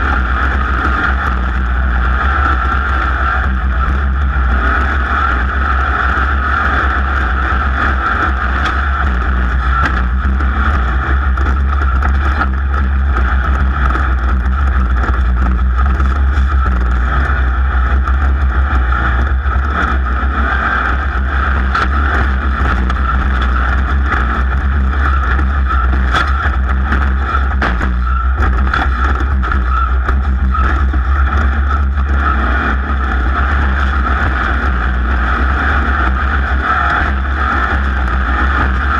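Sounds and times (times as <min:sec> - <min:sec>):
race car engine rumble: 0:00.0 - 0:38.9
wind noise: 0:00.0 - 0:38.9.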